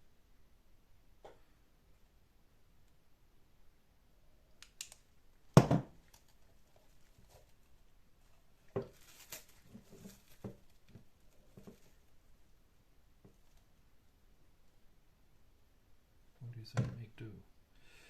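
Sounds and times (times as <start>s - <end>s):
rustling: 5.4s - 14.0s
loud knock on work surface: 5.6s - 5.9s.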